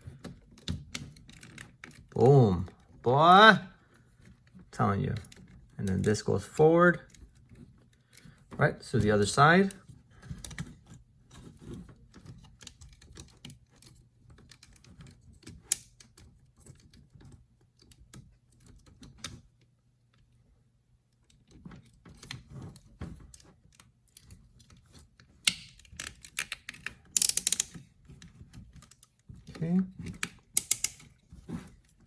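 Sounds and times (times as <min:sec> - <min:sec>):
plastic toy parts clicking: 0:25.4 - 0:27.9, 0:28.7 - 0:31.2.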